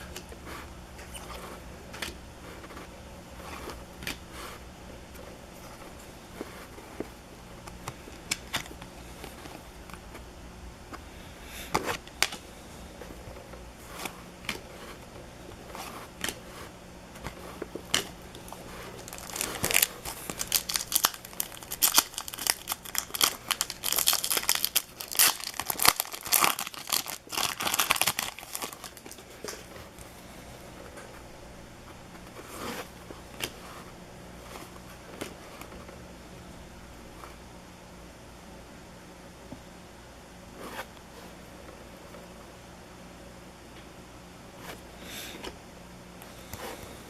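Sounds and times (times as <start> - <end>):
faint steady hum: 0.0 - 47.0
wrappers tearing and crinkling: 17.9 - 29.6.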